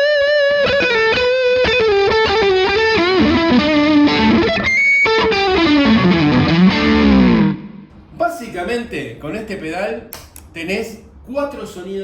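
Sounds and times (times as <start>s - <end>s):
electric guitar lead with vibrato: 0.0s - 7.9s.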